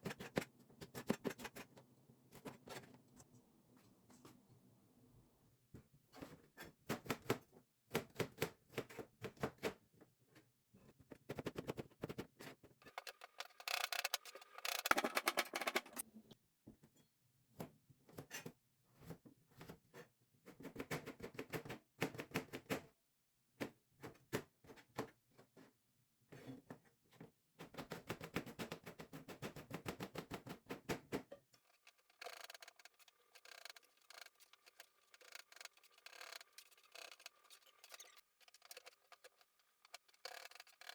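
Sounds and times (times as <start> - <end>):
utensils clicking and tapping: 12.9 - 16.0, 31.6 - 40.9.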